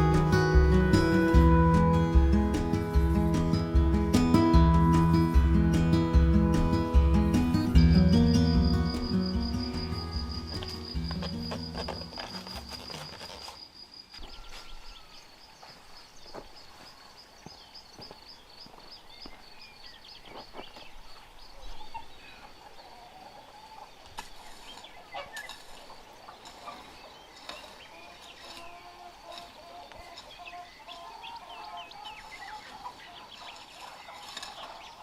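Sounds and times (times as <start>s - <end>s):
birds chirping: 0.0s - 35.0s
cricket trilling: 7.8s - 19.6s.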